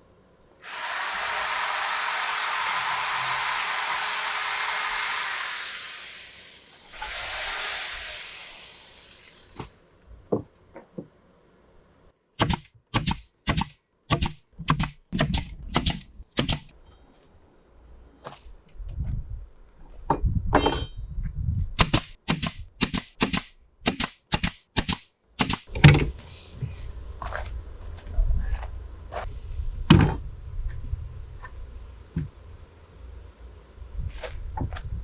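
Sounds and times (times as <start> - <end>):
power tool whooshing: 0.6 - 9.6.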